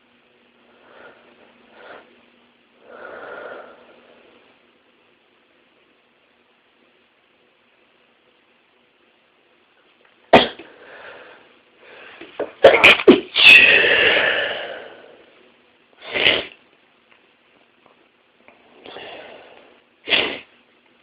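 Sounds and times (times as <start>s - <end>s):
person sneezing: 10.3s - 10.7s, 12.6s - 14.9s, 16.0s - 16.6s, 20.0s - 20.5s
long voiced exhale: 13.4s - 15.2s.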